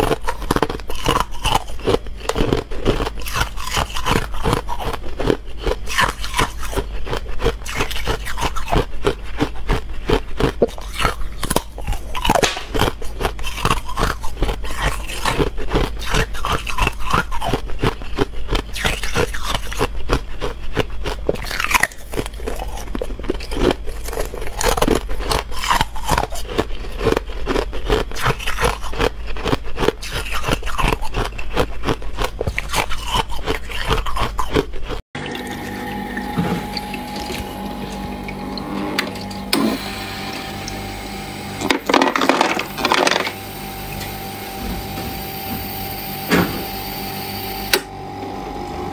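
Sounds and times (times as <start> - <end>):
ice crunching while chewed: 0.0 - 39.8.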